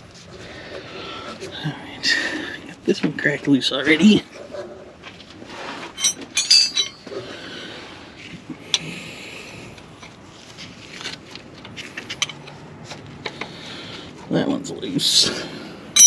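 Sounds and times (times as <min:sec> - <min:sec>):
hand tools clinking on metal: 0:06.0 - 0:07.1.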